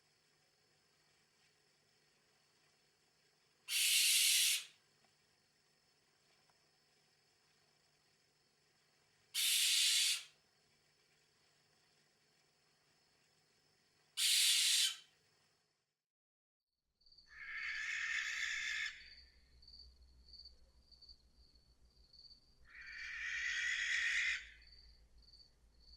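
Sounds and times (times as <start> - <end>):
crickets chirping: 0.0 - 15.9, 17.0 - 25.9
barn owl screeching: 3.7 - 4.7, 9.4 - 10.3, 14.2 - 15.1, 17.3 - 19.0, 22.7 - 24.6.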